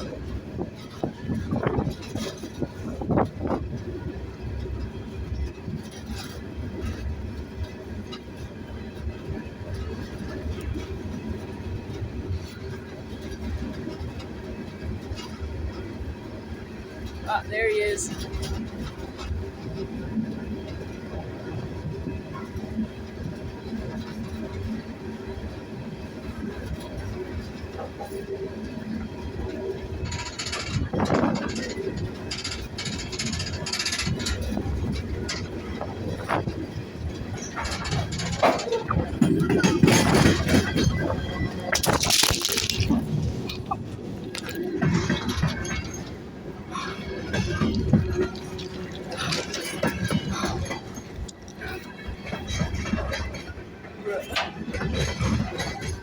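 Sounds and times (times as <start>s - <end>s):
freight train rumbling on rails: 0.0s - 56.0s
clicks and clanks: 30.0s - 46.2s.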